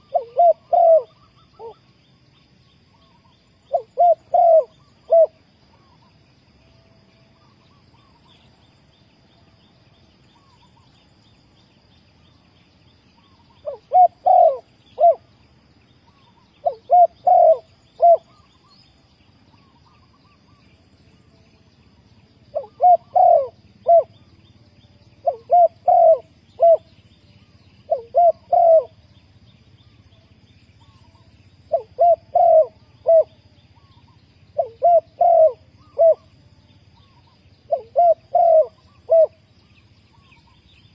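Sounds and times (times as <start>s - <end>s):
dove cooing: 0.0s - 1.8s, 3.7s - 6.0s, 13.2s - 15.4s, 16.1s - 18.7s, 22.5s - 24.3s, 25.2s - 26.9s, 27.8s - 29.0s, 30.8s - 36.3s, 37.0s - 39.5s.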